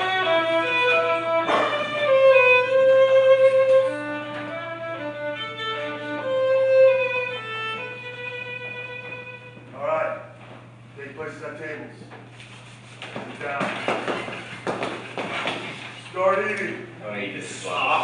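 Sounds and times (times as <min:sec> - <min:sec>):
violin playing slow melody: 0:00.0 - 0:09.7
steady low hum: 0:00.0 - 0:18.0.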